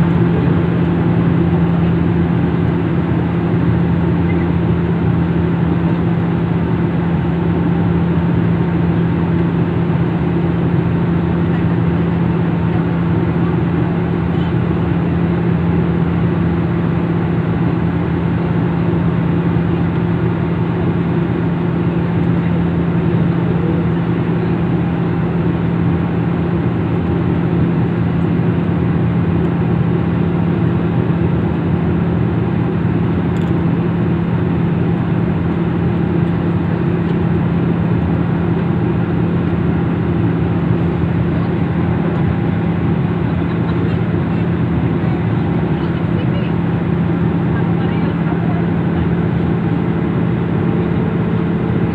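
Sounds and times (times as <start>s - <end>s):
loud engine drone: 0.0s - 51.9s.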